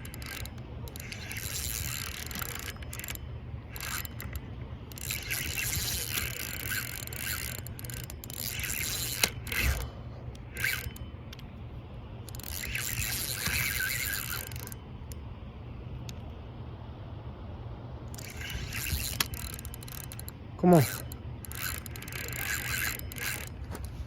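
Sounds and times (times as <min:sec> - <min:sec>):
fishing reel ratcheting: 0:00.0 - 0:11.5, 0:12.3 - 0:15.2, 0:18.1 - 0:24.0.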